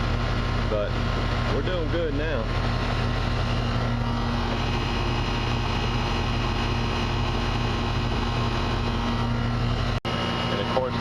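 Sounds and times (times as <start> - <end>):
air conditioner outdoor unit humming: 0.0 - 11.0.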